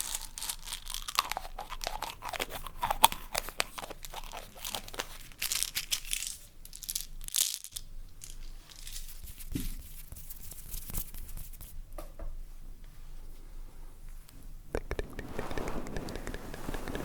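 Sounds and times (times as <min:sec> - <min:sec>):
material crinkling and rustling: 0:14.9 - 0:17.0.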